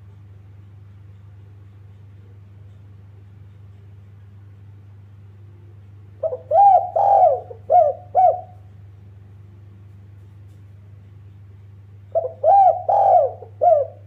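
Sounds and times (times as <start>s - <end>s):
dove cooing: 6.2s - 8.7s, 12.1s - 14.0s.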